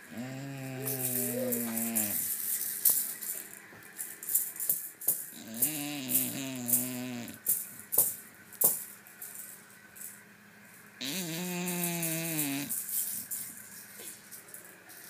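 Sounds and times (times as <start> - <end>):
bulldog snoring: 0.0 - 2.2, 5.4 - 7.4, 11.0 - 12.8
plastic toy rattle shaken: 0.8 - 8.0, 11.6 - 15.0.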